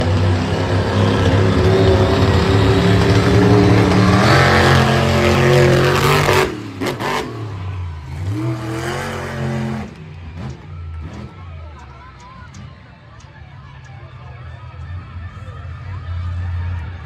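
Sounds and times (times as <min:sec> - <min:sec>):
monster truck engine revving: 0:00.0 - 0:12.9.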